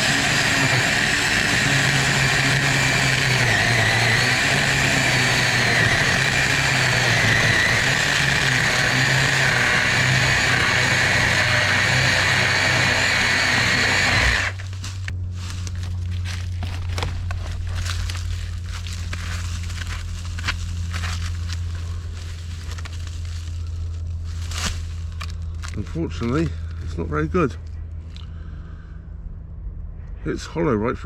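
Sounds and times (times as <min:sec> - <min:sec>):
cordless chainsaw cutting wood: 0:00.0 - 0:15.1.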